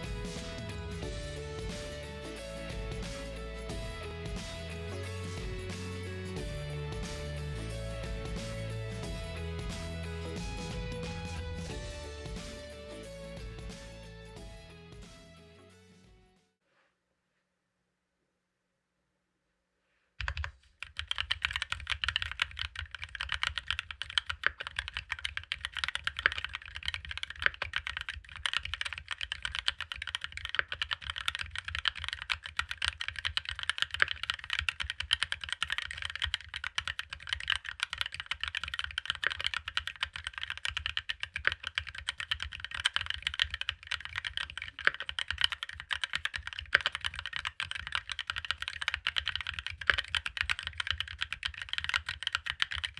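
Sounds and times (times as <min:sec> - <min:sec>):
mechanical keyboard typing: 0:20.2 - 0:52.9.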